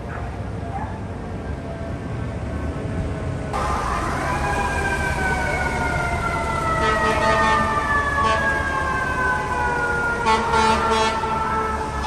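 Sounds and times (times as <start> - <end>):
fire truck siren: 3.5 - 12.0.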